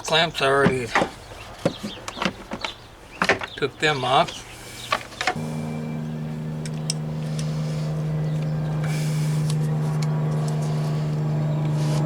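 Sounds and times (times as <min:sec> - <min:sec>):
vehicle engine humming: 0:05.3 - 0:12.0.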